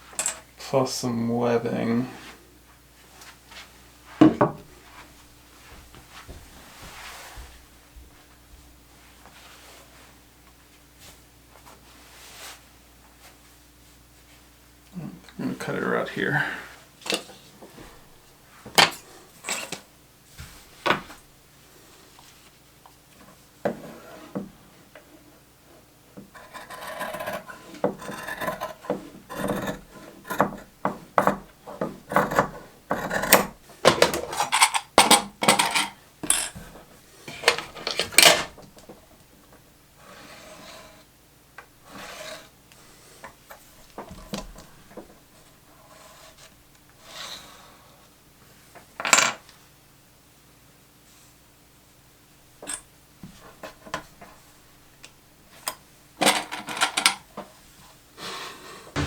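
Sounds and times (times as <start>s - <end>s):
cloth rustling on a surface: 4.8s - 8.3s.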